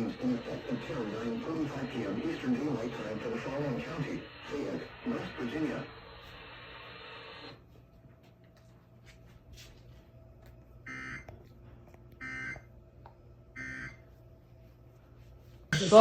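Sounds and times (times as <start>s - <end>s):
radio hiss: 0.0s - 7.6s.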